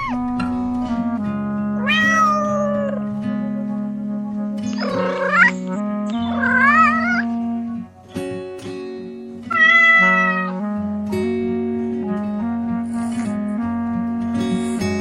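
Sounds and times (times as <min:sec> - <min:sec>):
cat meowing: 0:00.0 - 0:00.3, 0:01.8 - 0:03.0, 0:04.8 - 0:07.2, 0:09.5 - 0:10.6
plucked-string music: 0:00.0 - 0:15.0.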